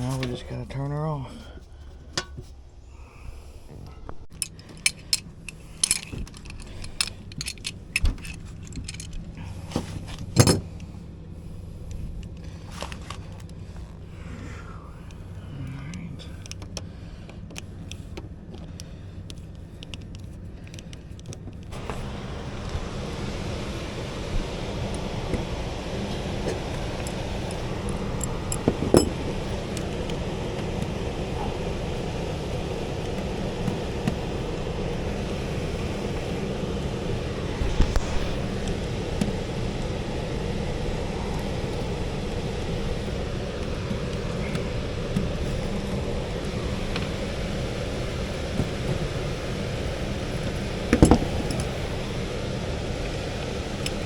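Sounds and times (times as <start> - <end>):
steady low hum: 0.0 - 54.0
steady low rumble: 0.0 - 54.0.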